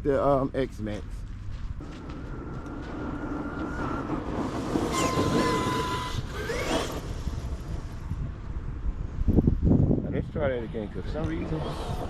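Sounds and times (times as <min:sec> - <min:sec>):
electric motor whining: 0:02.6 - 0:07.7.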